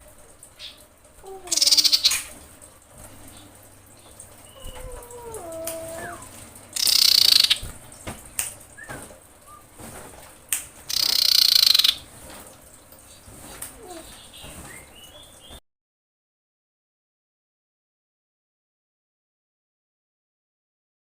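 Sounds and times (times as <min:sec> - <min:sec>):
harsh rasping bird calls: 0:01.4 - 0:02.4, 0:03.3 - 0:07.7, 0:10.9 - 0:12.1.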